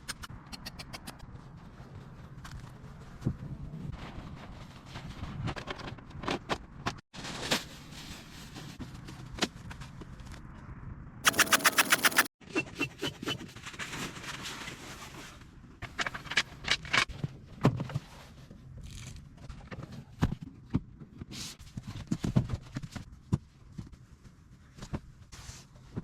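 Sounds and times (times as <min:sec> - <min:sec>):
knocks clicks and scrapes: 0:11.3 - 0:12.3.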